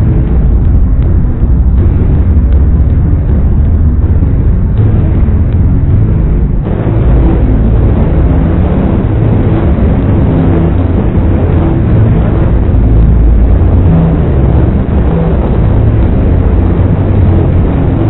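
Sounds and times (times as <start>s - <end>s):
distorted saw sound effect: 0.0s - 18.0s.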